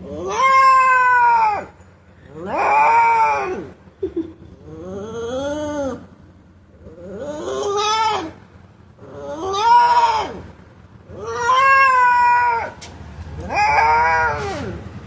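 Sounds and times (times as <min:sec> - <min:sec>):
puppy crying: 0:02.3 - 0:06.1, 0:11.1 - 0:14.9.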